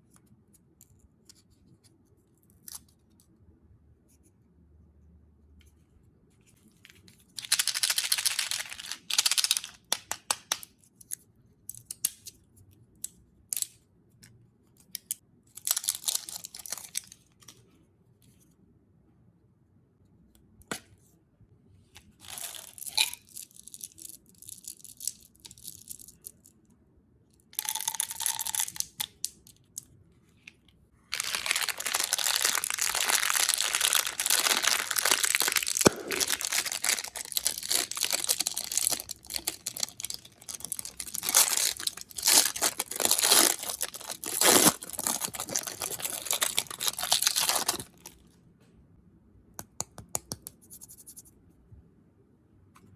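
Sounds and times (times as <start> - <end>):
candy wrappers crinkling and tearing: 7.4 - 10.6, 15.5 - 17.6, 31.0 - 48.2.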